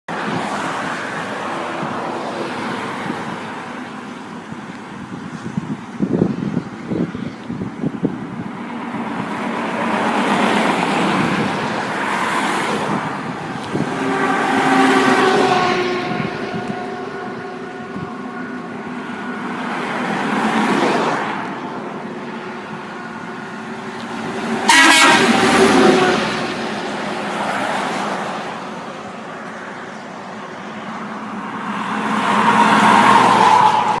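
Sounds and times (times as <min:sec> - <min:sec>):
passing traffic: 0:00.1 - 0:34.0
truck horn blasts: 0:13.9 - 0:18.7, 0:24.5 - 0:26.6.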